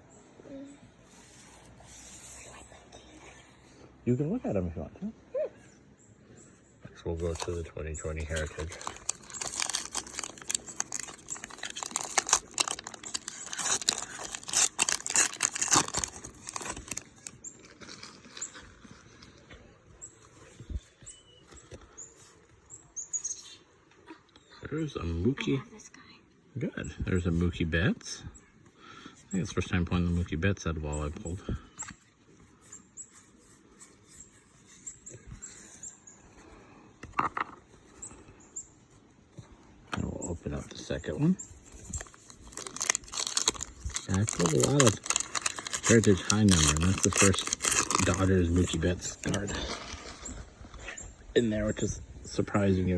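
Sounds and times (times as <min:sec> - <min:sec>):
plastic wrapper crinkling and tearing: 0:07.2 - 0:19.4, 0:41.5 - 0:50.6
trading cards rustling: 0:07.2 - 0:19.4, 0:41.4 - 0:50.4.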